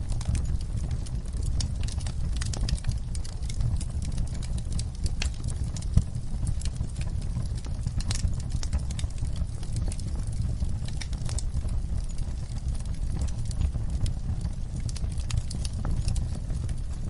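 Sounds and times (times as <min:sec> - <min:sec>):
burning logs crackling and popping: 0:00.0 - 0:17.0
fire flames rumbling: 0:00.0 - 0:17.0.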